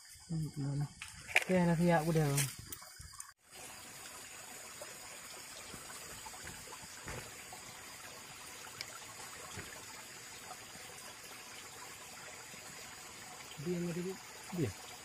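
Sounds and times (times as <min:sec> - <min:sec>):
stream water trickling over rocks: 0:00.0 - 0:15.0.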